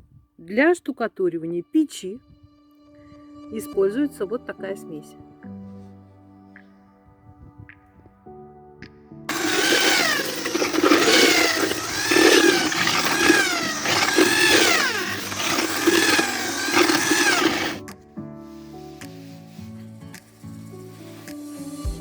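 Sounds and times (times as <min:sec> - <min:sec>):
electric drill mixing plaster: 0:09.3 - 0:17.8.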